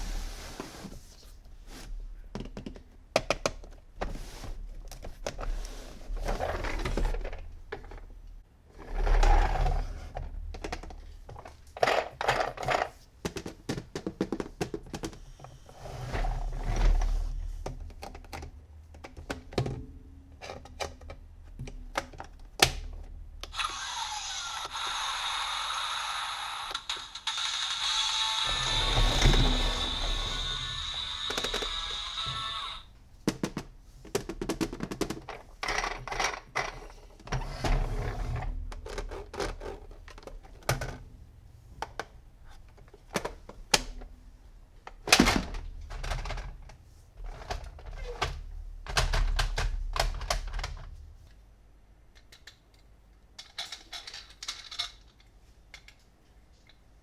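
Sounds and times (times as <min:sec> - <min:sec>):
hands handling plastic toys: 0:20.4 - 0:37.3, 0:52.1 - 0:57.0.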